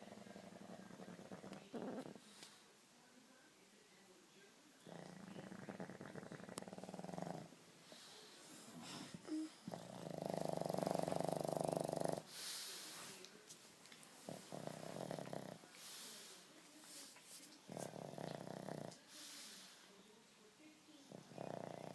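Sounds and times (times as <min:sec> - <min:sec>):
dog snoring: 0:00.0 - 0:02.4, 0:04.8 - 0:07.6, 0:08.6 - 0:12.3, 0:14.3 - 0:15.6, 0:17.7 - 0:19.0, 0:21.1 - 0:21.9
airy breaths: 0:12.2 - 0:13.2, 0:15.7 - 0:17.2.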